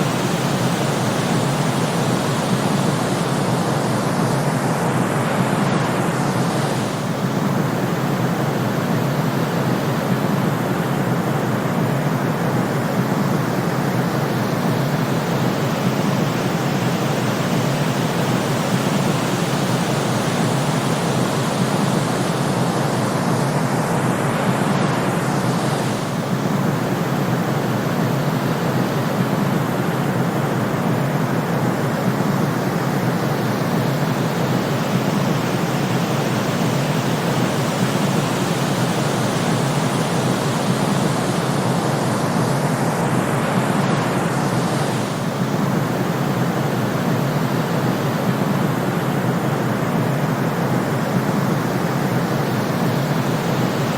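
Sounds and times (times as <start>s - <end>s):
steady white noise hiss: 0.0s - 53.9s.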